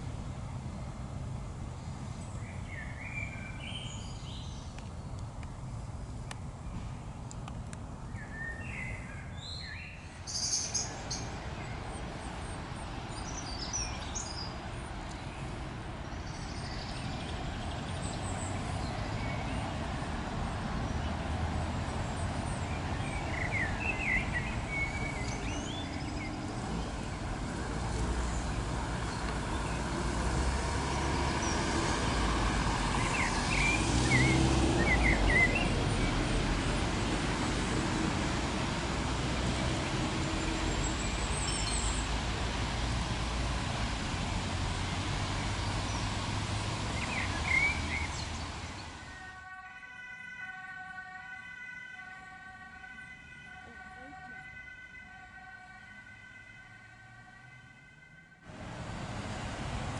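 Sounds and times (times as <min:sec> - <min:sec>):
distant road traffic rumble: 0:00.0 - 0:59.9.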